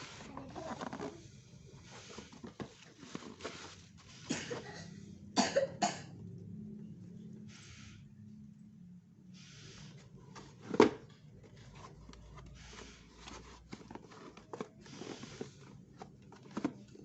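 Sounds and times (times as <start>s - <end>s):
man coughing: 4.3s - 6.1s
packaging rustling and clicks: 10.5s - 17.0s.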